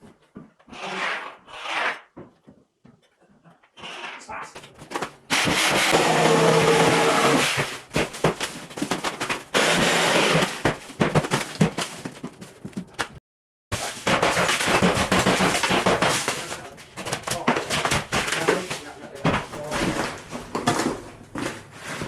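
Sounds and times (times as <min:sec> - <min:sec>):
wall material crumbling: 0:04.6 - 0:22.0.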